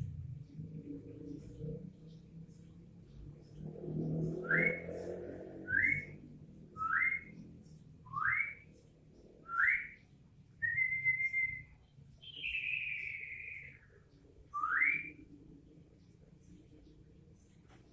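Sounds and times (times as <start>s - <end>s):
bulbul whistling: 4.4s - 5.0s, 5.6s - 6.2s, 6.8s - 7.4s, 8.0s - 8.8s, 9.4s - 10.0s, 10.6s - 13.9s, 14.5s - 15.3s.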